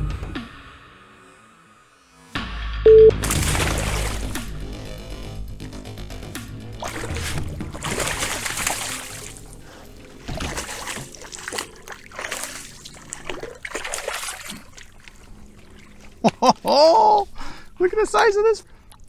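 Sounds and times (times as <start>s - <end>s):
water splashing and trickling: 3.2s - 4.8s, 6.6s - 19.0s.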